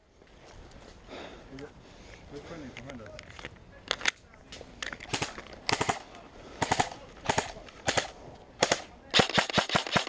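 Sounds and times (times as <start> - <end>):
airsoft guns firing: 5.1 - 10.0.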